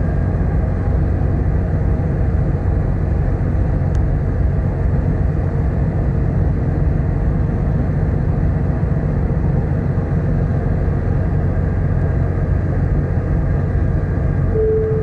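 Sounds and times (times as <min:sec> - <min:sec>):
ship engines droning: 0:11.9 - 0:15.0.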